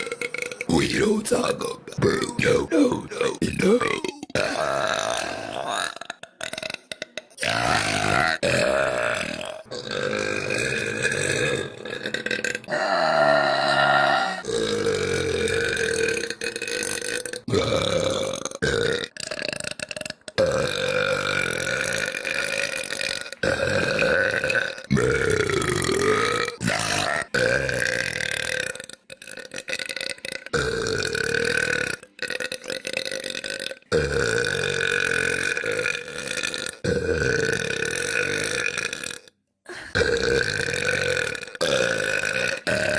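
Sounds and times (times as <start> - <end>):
girl burping: 2.0 - 16.3, 39.7 - 42.9.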